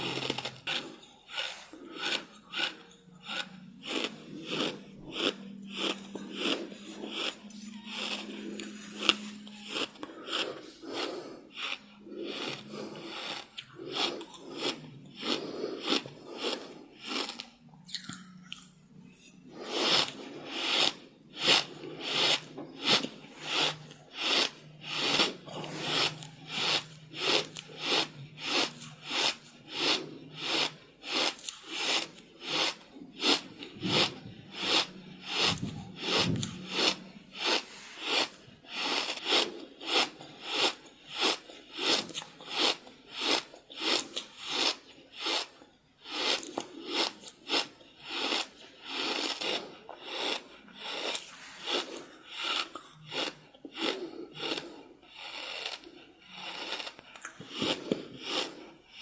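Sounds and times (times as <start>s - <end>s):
heavy rapid breathing: 0.0s - 17.4s, 19.5s - 42.0s.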